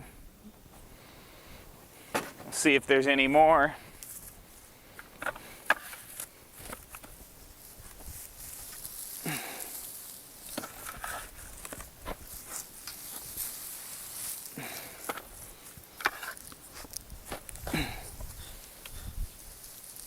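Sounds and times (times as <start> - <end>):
soil crunches and rustles: 0.7 - 20.0
garden fork turning soil: 4.0 - 20.0.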